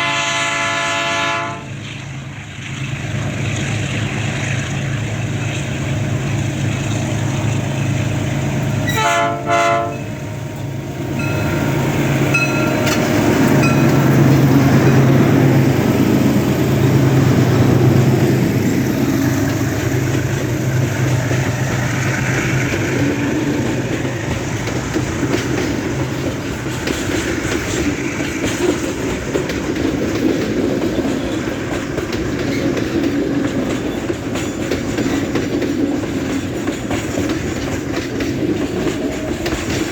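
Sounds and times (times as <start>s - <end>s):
train horn blast: 0.0s - 1.8s, 8.8s - 15.4s
diesel locomotive engines droning: 0.0s - 39.9s
wagons clacking over rail joints: 2.7s - 39.9s.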